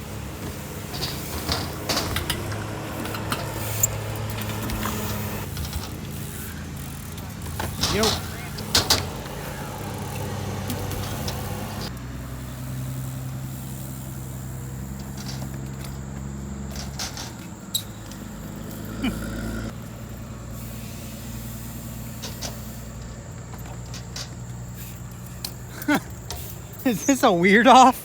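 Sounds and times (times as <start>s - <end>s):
vehicle engine running: 0.0s - 27.9s.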